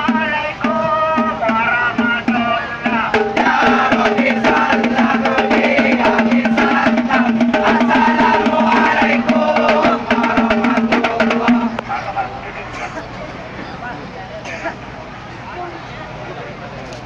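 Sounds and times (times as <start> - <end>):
fast drums and percussion: 0.0 - 12.2.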